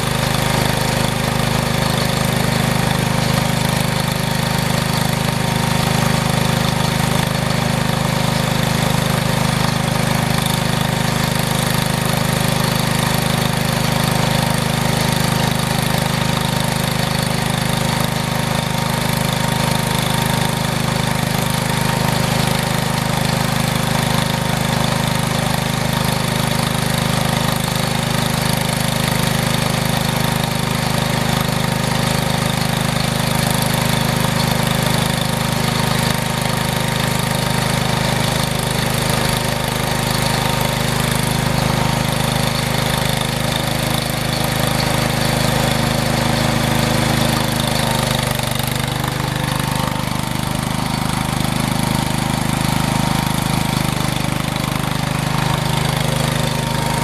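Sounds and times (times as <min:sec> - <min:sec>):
engine running steadily: 0:00.0 - 0:57.0.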